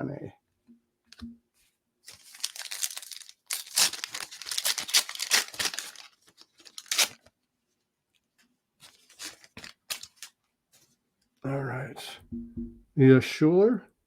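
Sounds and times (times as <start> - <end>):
wrapper tearing and crinkling: 2.1 - 7.3, 8.8 - 10.4.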